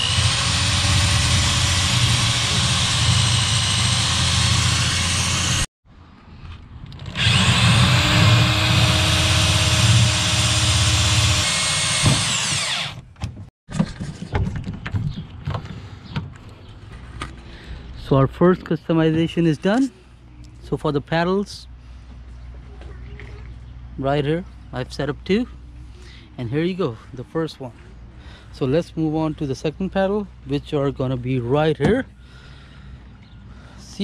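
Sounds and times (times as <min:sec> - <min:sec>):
power drill motor whine: 0:00.0 - 0:05.7, 0:07.0 - 0:13.0.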